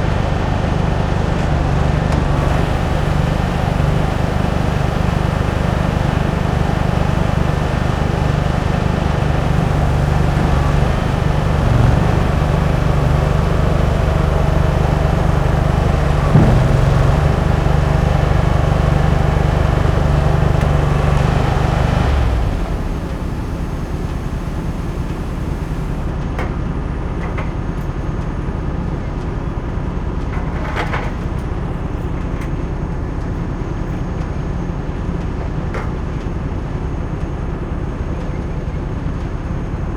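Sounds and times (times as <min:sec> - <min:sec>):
truck engine humming: 0:00.0 - 0:26.1.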